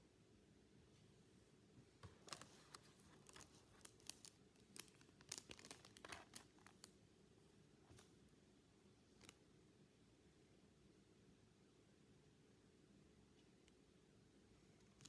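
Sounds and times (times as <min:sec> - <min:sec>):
wrapper and cards crinkling: 0:02.0 - 0:06.9.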